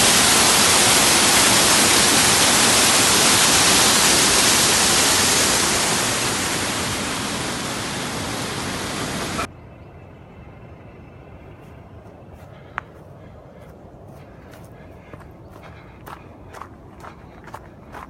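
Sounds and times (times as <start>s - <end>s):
waterfall rushing: 0.0s - 9.5s.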